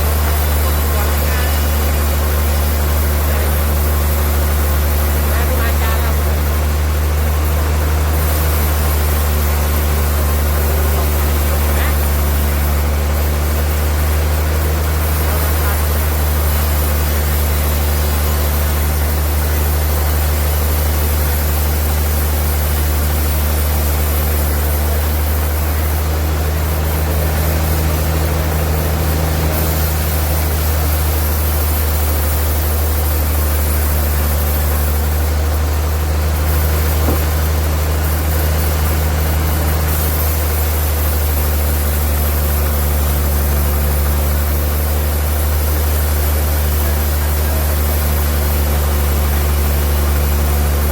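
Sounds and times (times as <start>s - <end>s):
sawmill machinery running: 0.0s - 50.9s.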